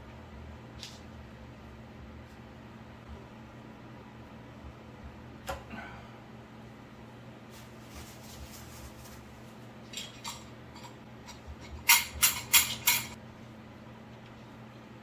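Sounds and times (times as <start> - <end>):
steady low hum: 0.0 - 15.0
metal tools clinking on metal: 11.9 - 13.2.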